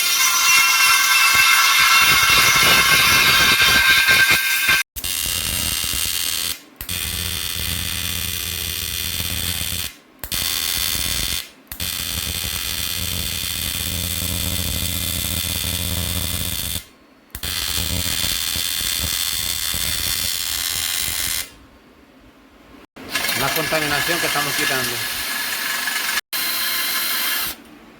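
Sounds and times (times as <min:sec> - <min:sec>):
rotary grinder on metal rim: 0:00.0 - 0:04.8, 0:23.0 - 0:27.6.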